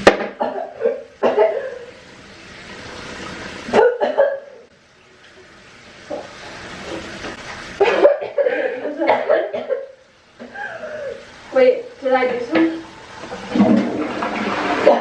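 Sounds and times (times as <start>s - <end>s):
woman coughing: 0.4s - 1.8s, 3.8s - 4.4s, 7.9s - 9.9s.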